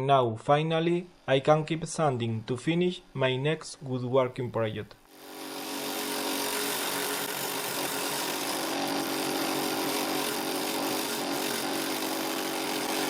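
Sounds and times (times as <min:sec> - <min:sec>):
drum sander whirring hum: 0:05.1 - 0:13.0.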